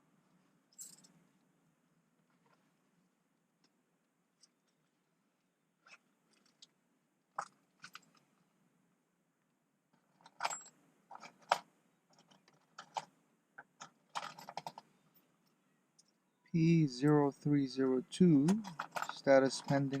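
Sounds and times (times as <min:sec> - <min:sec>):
small objects clicking and rattling: 0:05.8 - 0:06.8, 0:07.4 - 0:08.2, 0:18.5 - 0:20.0.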